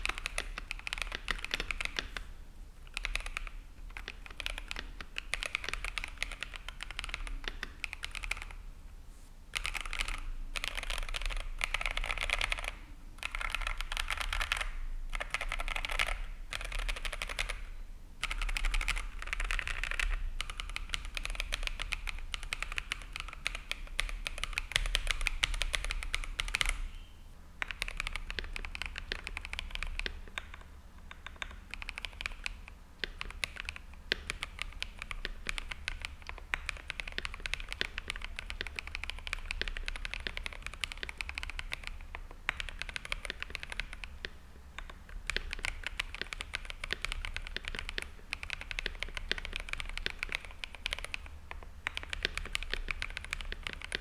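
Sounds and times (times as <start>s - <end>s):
fast typing on mechanical keyboard: 0.0s - 2.2s, 2.9s - 8.6s, 9.6s - 26.8s, 27.6s - 54.0s.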